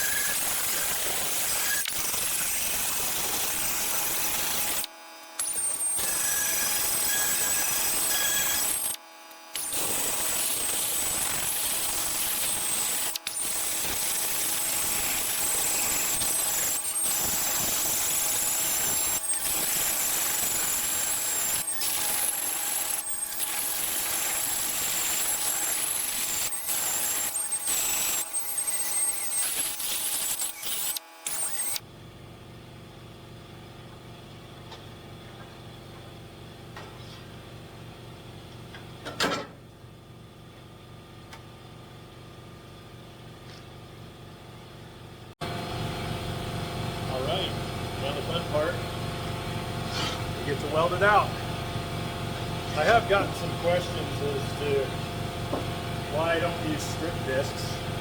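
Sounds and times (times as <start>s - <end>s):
angle grinder whine on steel: 0.0s - 31.9s, 45.4s - 58.0s.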